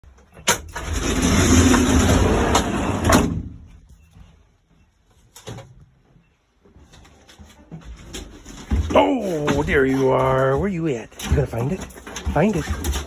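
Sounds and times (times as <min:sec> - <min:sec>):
sliding door rolling along track: 0:00.4 - 0:03.5.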